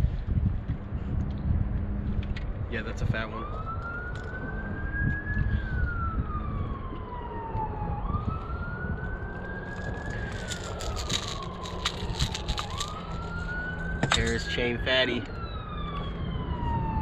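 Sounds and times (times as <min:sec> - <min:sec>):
siren wailing: 0:02.8 - 0:17.0
clicks and rattles: 0:09.8 - 0:13.1.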